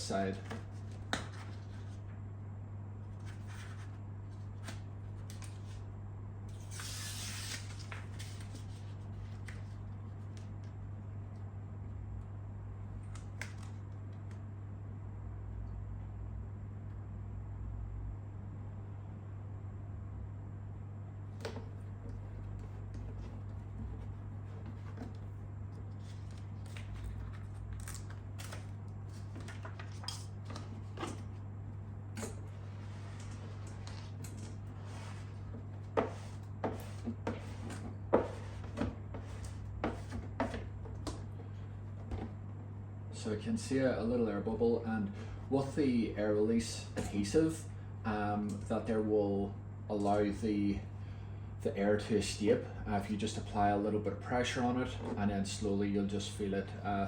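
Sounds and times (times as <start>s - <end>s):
steady low hum: 0.0s - 57.0s
scrapes and rustles on plastic: 32.5s - 41.2s.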